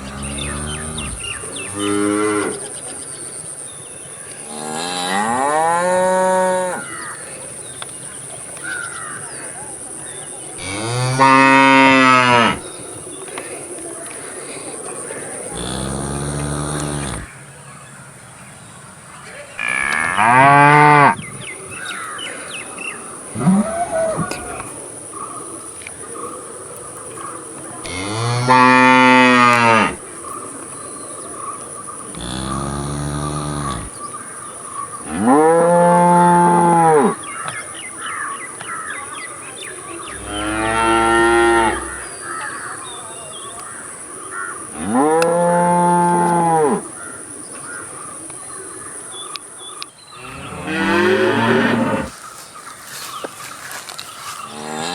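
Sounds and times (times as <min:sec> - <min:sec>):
cattle mooing: 0:00.0 - 0:02.6, 0:15.5 - 0:17.3, 0:27.8 - 0:30.0, 0:32.1 - 0:33.9, 0:40.1 - 0:42.1.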